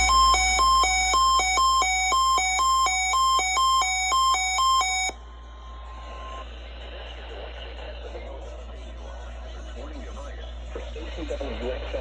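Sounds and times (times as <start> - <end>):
two-tone electronic alert: 0.0 - 5.2
faint radio hiss: 5.2 - 12.0.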